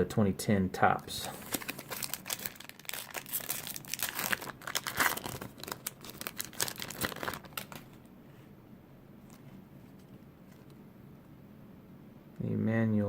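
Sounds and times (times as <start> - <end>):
wrapper crinkling and tearing: 1.4 - 8.0.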